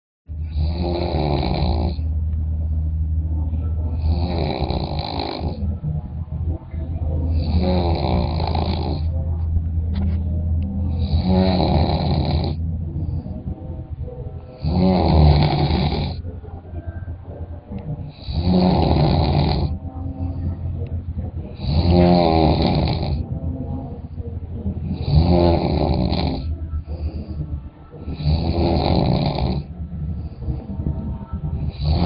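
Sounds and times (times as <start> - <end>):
rattling snores: 0.4 - 2.0, 4.0 - 5.6, 7.3 - 9.1, 10.9 - 12.6, 14.5 - 16.2, 18.1 - 19.8, 21.5 - 23.2, 24.8 - 27.2, 28.1 - 29.7, 31.6 - 32.0.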